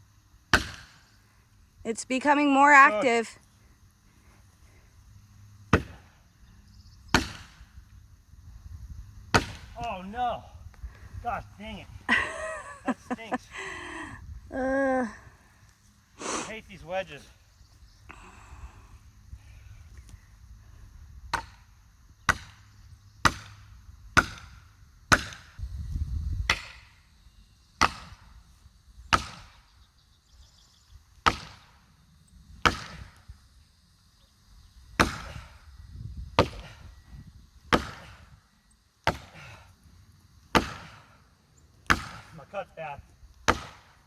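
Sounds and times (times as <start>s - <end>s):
axe striking wedges: 0.6s - 1.0s, 5.7s - 6.0s, 7.2s - 7.6s, 9.3s - 9.8s, 35.0s - 35.5s, 36.4s - 36.7s, 37.7s - 38.2s, 39.1s - 39.4s, 40.5s - 41.1s, 41.9s - 42.3s, 43.5s - 43.9s.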